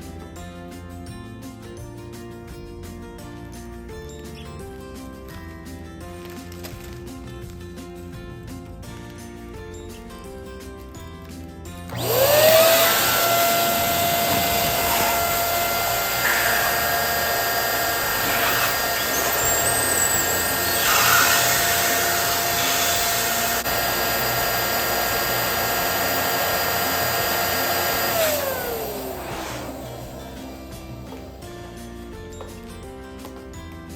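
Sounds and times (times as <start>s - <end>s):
electric balloon inflator whining: 11.8s - 31.8s.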